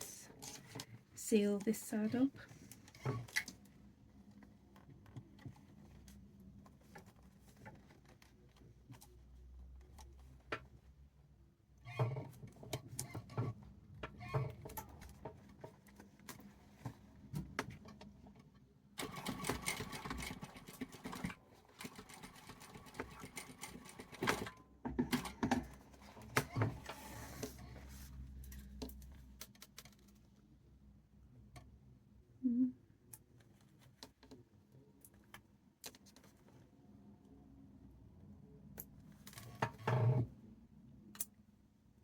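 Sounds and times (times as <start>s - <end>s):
sewing machine stitching: 19.0s - 27.6s.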